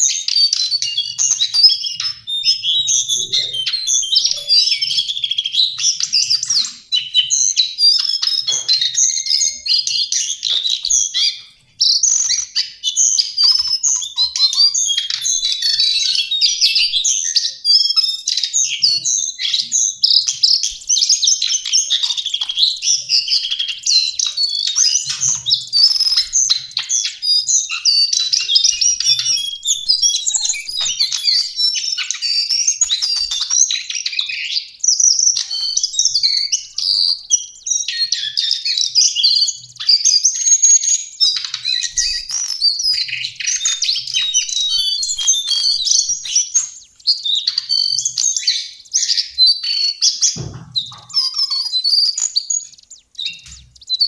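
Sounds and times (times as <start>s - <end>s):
bird warbling high-pitched song: 0.0s - 54.0s.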